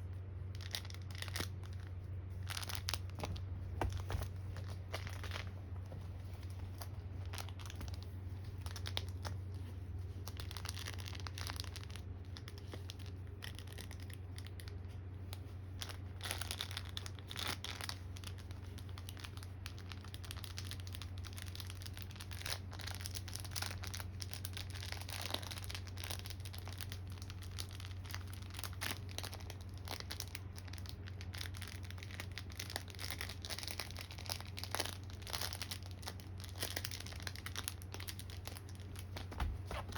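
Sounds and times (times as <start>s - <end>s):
steady low hum: 0.0s - 39.9s
dog chewing and tearing toy: 15.4s - 39.9s.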